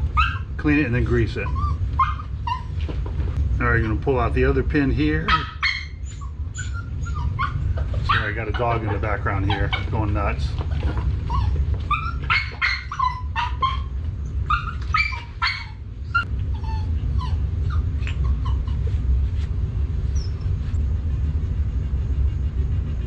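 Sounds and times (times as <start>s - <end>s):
dog barking and yipping: 0.0s - 0.6s, 1.4s - 2.9s, 5.2s - 19.0s
low rumble: 0.0s - 23.0s.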